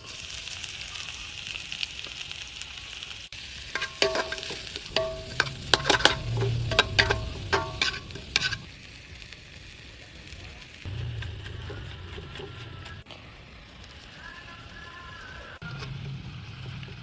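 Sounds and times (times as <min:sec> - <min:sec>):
spinach sizzling in a pan: 0:00.0 - 0:10.9
metal utensil scraping a pan: 0:03.7 - 0:08.7.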